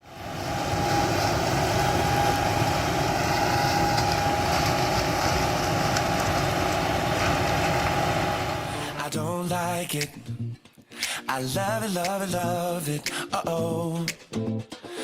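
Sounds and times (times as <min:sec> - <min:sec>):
heavy farm machinery rumbling: 0:00.0 - 0:09.4.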